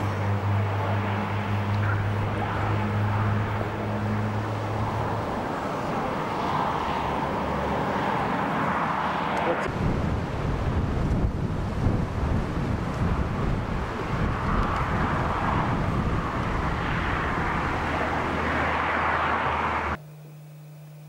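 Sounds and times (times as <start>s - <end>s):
low hum: 0.0s - 9.1s
road noise: 0.0s - 20.0s
vehicle engine running: 0.0s - 20.0s
wind buffeting microphone: 9.6s - 19.9s.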